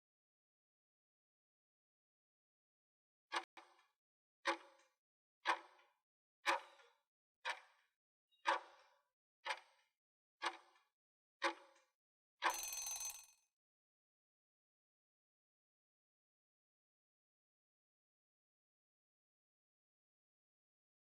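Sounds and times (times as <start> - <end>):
timer ticking: 12.4 - 13.2
short timer ring: 12.4 - 13.4.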